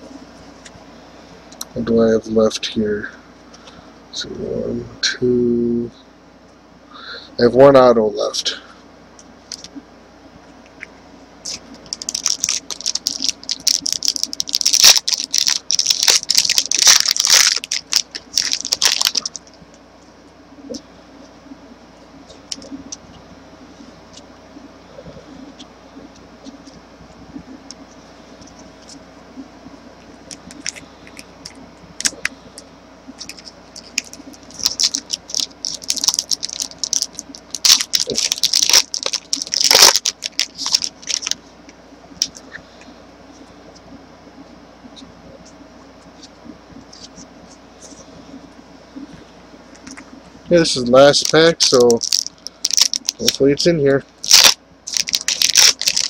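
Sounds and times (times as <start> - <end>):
foil wrapper crinkling: 11.4 - 19.6, 30.2 - 32.4, 33.2 - 41.4, 50.8 - 56.0.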